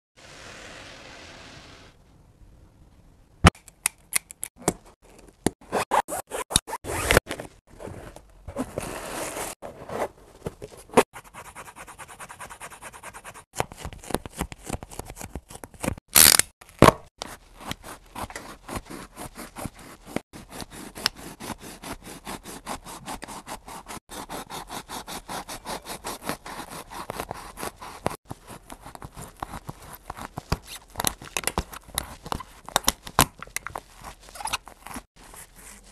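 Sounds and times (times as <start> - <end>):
snips scratches and clicks: 3.4 - 7.2.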